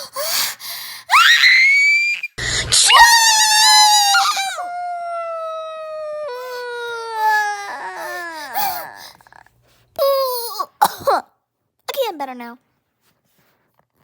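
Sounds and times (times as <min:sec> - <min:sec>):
short falling cry: 0:01.1 - 0:05.4
person wailing: 0:02.4 - 0:08.6.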